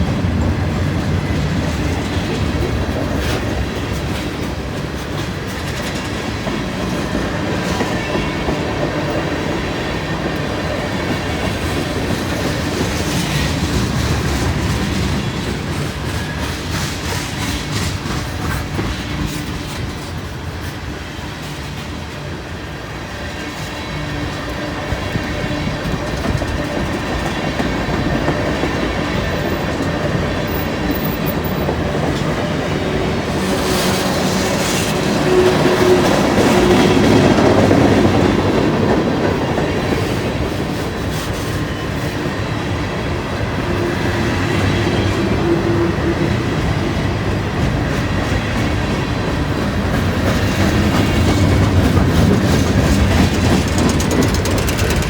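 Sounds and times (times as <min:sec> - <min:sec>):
freight train rumbling past: 0:00.0 - 0:55.0
wheels clacking over rail joints: 0:45.2 - 0:55.0.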